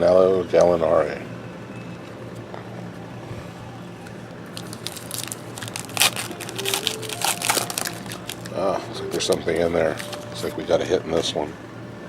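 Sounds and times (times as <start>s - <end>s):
foil wrapper tearing and crinkling: 4.5s - 8.8s, 9.9s - 10.4s.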